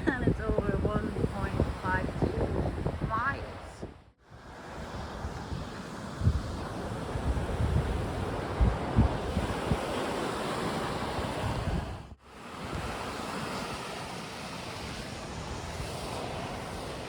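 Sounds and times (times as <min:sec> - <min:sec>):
wind buffeting microphone: 0:00.0 - 0:17.0
surf breaking on shore: 0:04.3 - 0:17.0.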